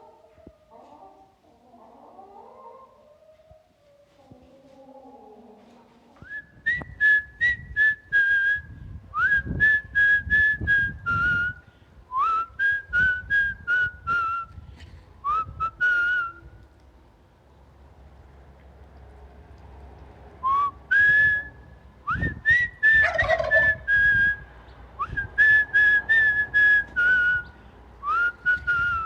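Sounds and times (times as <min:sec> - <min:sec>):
low rumbling noise: 0:06.6 - 0:29.0.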